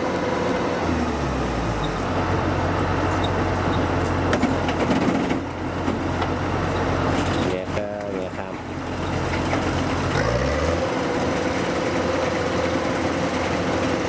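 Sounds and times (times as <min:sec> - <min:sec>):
diesel engine droning: 0:00.0 - 0:14.0.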